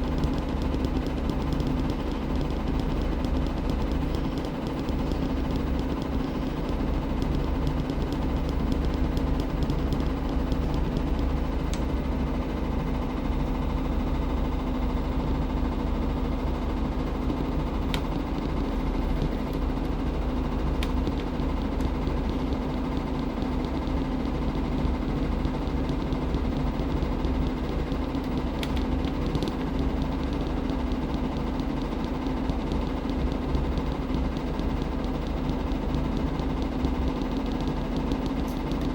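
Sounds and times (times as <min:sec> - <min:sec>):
washing machine motor hum: 0:00.0 - 0:38.9.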